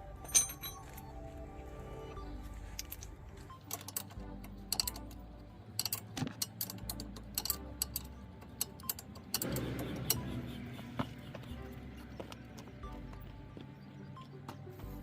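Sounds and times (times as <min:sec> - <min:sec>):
metal tools clicking and clinking: 0:00.0 - 0:01.1, 0:02.7 - 0:09.8
background music: 0:00.0 - 0:15.0.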